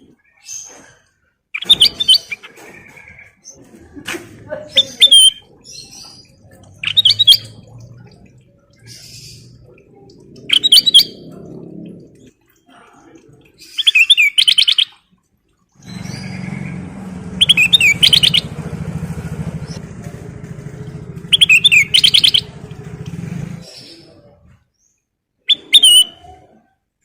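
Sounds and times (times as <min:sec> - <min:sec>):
bulbul singing whistled phrases: 0:01.6 - 0:03.2, 0:04.8 - 0:11.3, 0:13.6 - 0:15.0, 0:15.8 - 0:18.6, 0:21.3 - 0:22.6, 0:25.5 - 0:26.6
low steady rumble: 0:05.4 - 0:12.4, 0:15.8 - 0:24.6.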